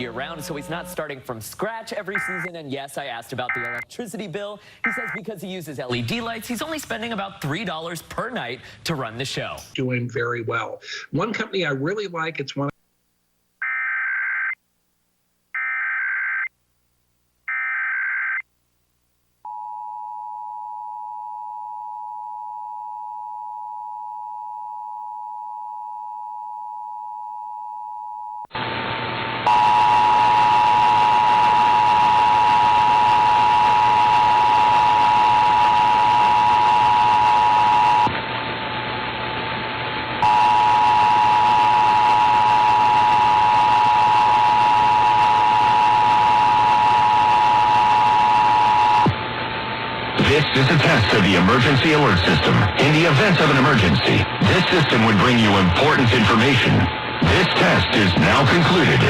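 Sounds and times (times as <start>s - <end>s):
warbling data header bursts: 2.1s - 2.5s, 4.8s - 5.2s
two-tone attention signal: 2.2s - 2.5s, 4.9s - 5.2s.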